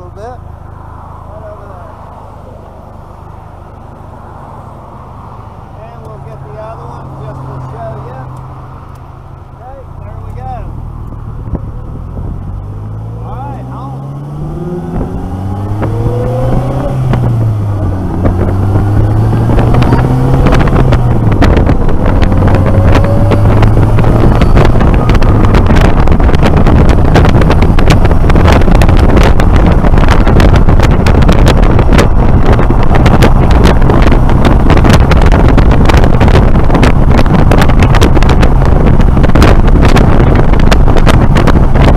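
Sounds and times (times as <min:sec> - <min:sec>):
wind buffeting on microphone: 0:09.1 - 0:41.9
engine accelerating: 0:10.1 - 0:41.9.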